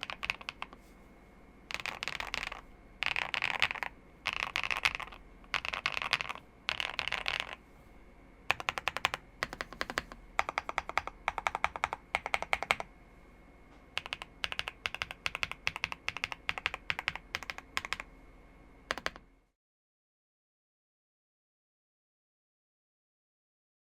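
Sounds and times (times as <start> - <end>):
typing on mechanical keyboard: 0.0 - 0.8, 1.7 - 7.6, 8.5 - 12.9, 14.0 - 18.1, 18.9 - 19.2.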